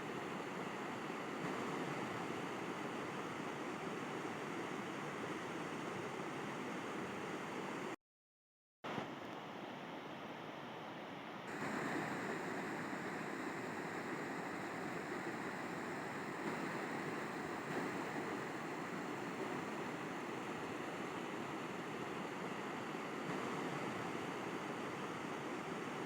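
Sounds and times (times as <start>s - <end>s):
river water rushing: 11.5s - 26.0s.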